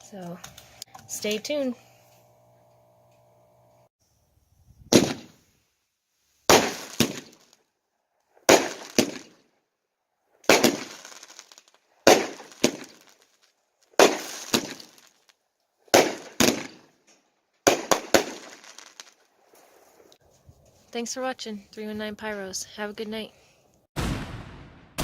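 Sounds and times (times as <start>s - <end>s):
firework shells bursting: 4.8s - 5.5s, 6.4s - 7.7s, 8.3s - 9.5s, 10.4s - 20.2s
firework launch bangs: 4.9s - 5.4s, 6.5s - 7.6s, 8.5s - 9.4s, 10.4s - 13.3s, 14.0s - 15.2s, 15.9s - 16.9s, 17.7s - 19.2s, 24.0s - 25.0s.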